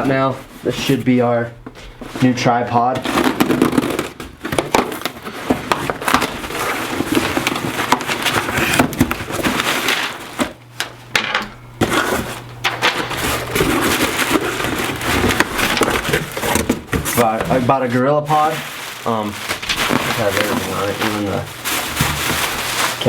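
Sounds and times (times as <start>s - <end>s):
cardboard box being opened: 13.1s - 17.8s, 18.4s - 23.0s.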